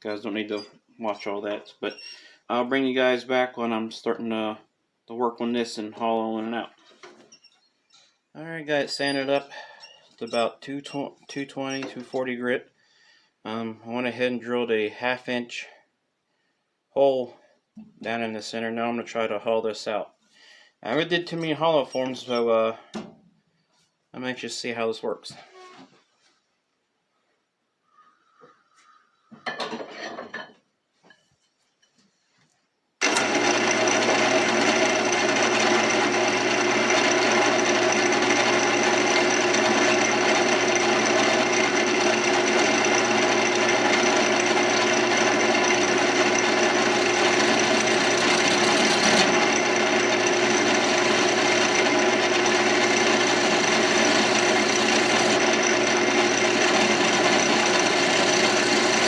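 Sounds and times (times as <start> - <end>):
tool scraping spinning wood: 33.0 - 59.0
wood lathe running: 33.0 - 59.0.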